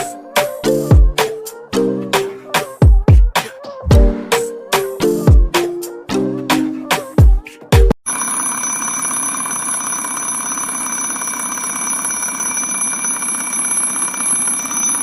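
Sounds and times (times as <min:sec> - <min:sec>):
background music: 0:00.0 - 0:08.0
alarm clock ringing: 0:08.1 - 0:15.0.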